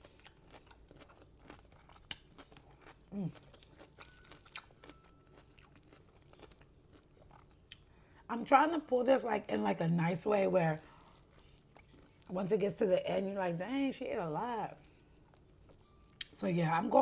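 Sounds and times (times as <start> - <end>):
pickled radish crunching: 0.0 - 7.9, 14.5 - 17.0
quiet chewing: 0.0 - 8.2, 10.2 - 12.3, 14.7 - 16.4.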